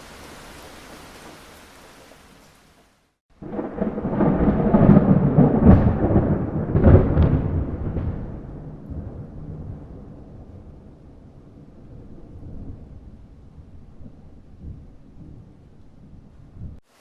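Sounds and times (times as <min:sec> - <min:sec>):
rain hiss: 0:00.0 - 0:03.6, 0:16.8 - 0:17.0
thunder rumbling: 0:03.3 - 0:16.8.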